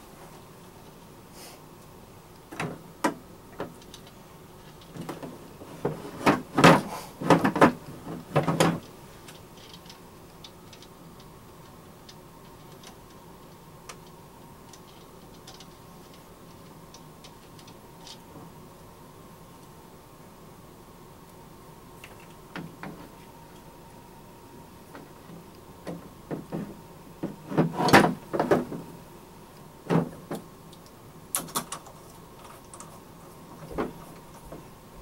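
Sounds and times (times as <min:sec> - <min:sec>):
equipment knocking and clunking: 0:25.8 - 0:28.9.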